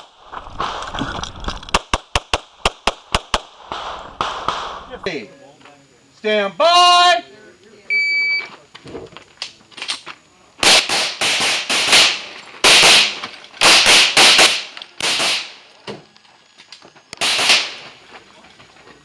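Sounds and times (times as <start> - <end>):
pistol firing rapid shots: 10.6 - 15.6, 17.2 - 17.9.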